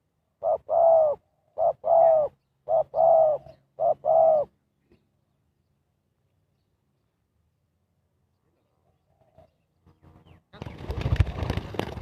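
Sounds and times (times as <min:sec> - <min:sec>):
dove cooing: 0:00.4 - 0:04.6, 0:08.8 - 0:09.6.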